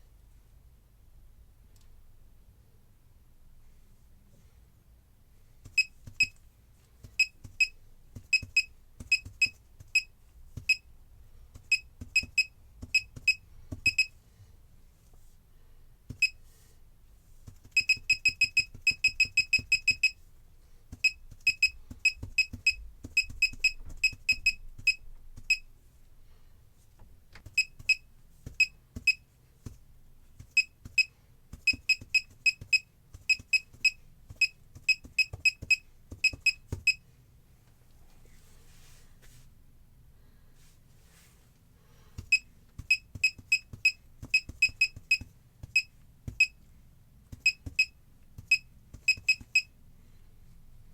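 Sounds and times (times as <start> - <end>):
short high keypress beeps: 5.8 - 6.4, 7.2 - 10.8, 11.7 - 14.1, 17.8 - 20.2, 21.0 - 25.7, 27.5 - 28.0, 28.6 - 29.2, 31.7 - 37.0, 42.3 - 46.6, 47.4 - 49.7.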